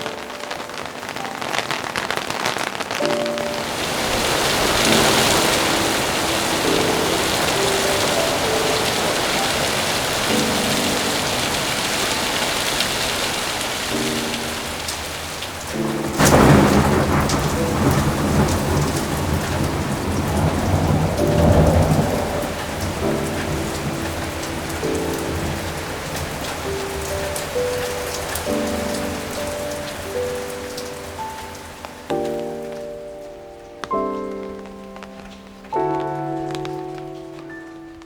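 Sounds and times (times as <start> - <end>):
steady rainfall: 0.0 - 38.0
low rolling thunder rumble: 3.4 - 31.3
sharp thunderclap: 15.8 - 25.8.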